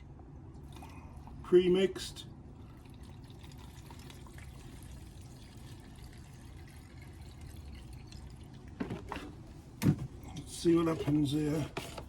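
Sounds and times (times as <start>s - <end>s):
fuel trickling into tank: 2.5s - 9.5s.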